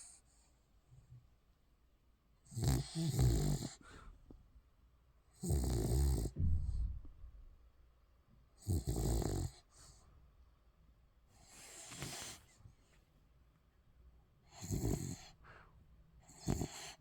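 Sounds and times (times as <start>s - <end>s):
puppy snoring: 2.4s - 4.0s, 5.3s - 7.1s, 8.6s - 10.0s, 11.4s - 12.5s, 14.5s - 15.6s, 16.2s - 17.0s.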